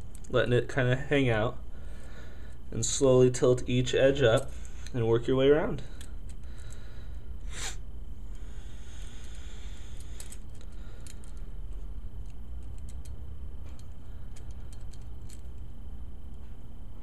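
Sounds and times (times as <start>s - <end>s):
steady low hum: 0.0s - 17.0s
bearing balls clicking into retainer: 8.3s - 16.4s.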